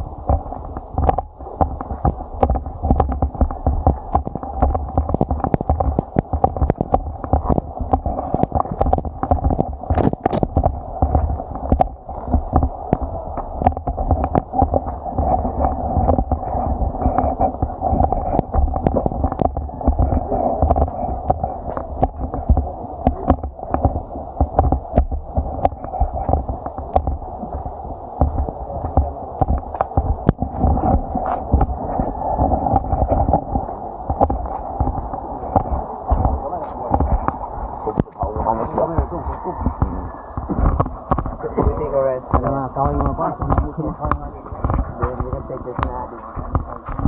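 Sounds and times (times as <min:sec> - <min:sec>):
muffled underwater rumble: 0:00.0 - 0:47.0
knocks and clicks: 0:00.2 - 0:31.7.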